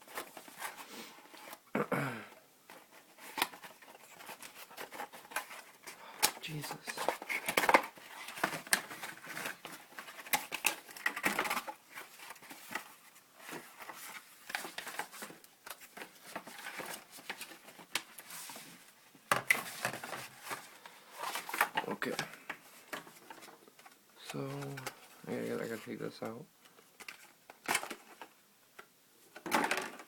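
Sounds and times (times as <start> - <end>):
packaging crinkling and snapping: 3.2 - 18.2.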